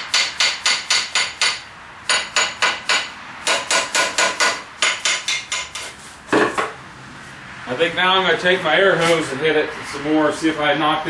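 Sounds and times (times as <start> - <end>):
hammer tapping on metal vise: 0.0 - 6.8.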